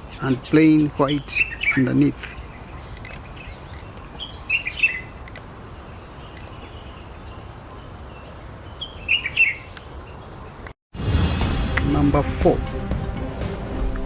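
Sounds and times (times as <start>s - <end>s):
small birds chirping: 0.0s - 10.8s.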